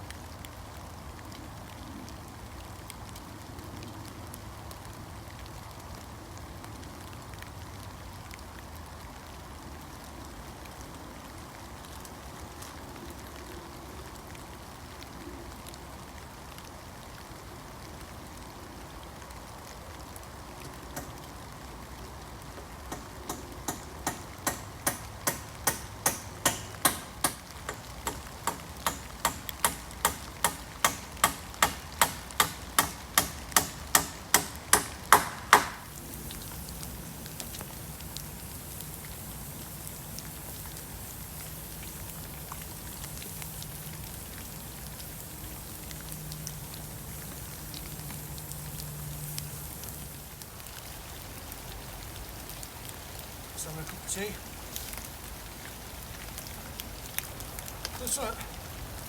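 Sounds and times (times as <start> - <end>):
rain pattering: 0.0 - 59.0
hammer driving nail into wood: 22.9 - 35.9.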